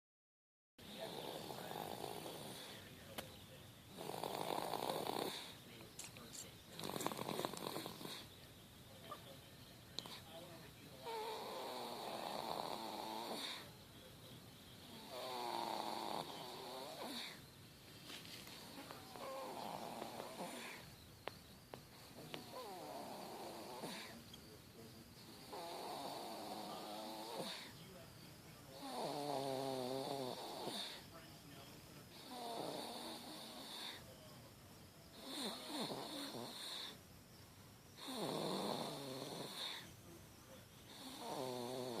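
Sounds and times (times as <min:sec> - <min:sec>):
baby snoring: 0:00.9 - 0:02.9, 0:03.9 - 0:05.6, 0:06.8 - 0:08.4, 0:11.0 - 0:13.8, 0:14.8 - 0:17.4, 0:18.6 - 0:20.9, 0:22.0 - 0:24.2, 0:25.4 - 0:27.8, 0:28.8 - 0:31.0, 0:32.2 - 0:34.1, 0:35.1 - 0:37.0, 0:38.0 - 0:39.9, 0:40.9 - 0:42.0.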